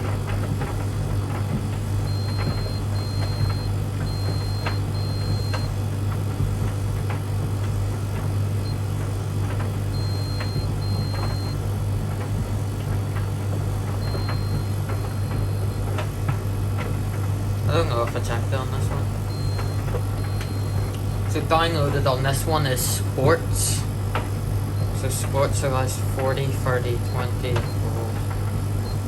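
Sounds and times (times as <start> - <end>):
tumble dryer humming: 0.0 - 29.0
washing machine short high beeps: 2.0 - 5.8, 9.9 - 11.7, 13.9 - 16.0, 17.7 - 22.6, 24.8 - 28.1, 28.8 - 29.0.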